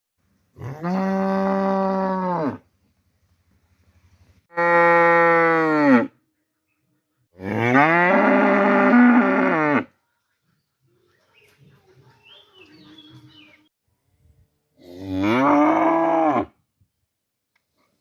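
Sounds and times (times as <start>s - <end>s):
cow mooing: 0.6s - 2.6s, 4.5s - 6.2s, 7.4s - 9.9s, 14.8s - 16.6s.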